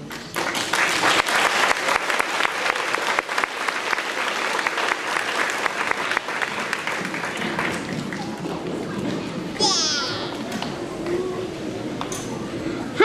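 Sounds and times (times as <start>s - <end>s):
audience applauding: 0.0s - 8.4s.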